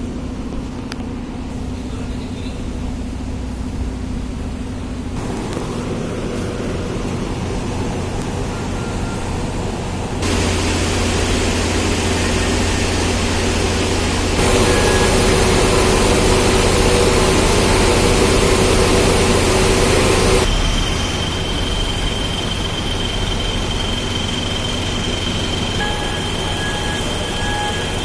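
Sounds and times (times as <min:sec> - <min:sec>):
engine and machinery hum: 0:00.0 - 0:28.0.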